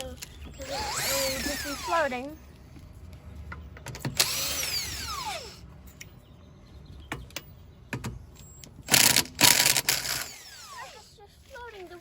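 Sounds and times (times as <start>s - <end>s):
power tool whining down: 0.6s - 2.1s, 4.1s - 5.6s, 8.9s - 11.2s.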